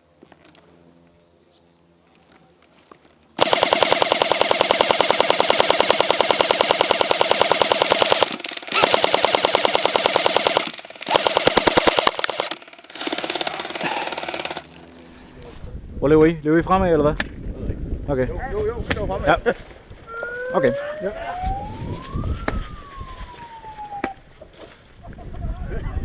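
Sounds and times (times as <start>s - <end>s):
airsoft gun firing full auto: 3.4s - 14.7s.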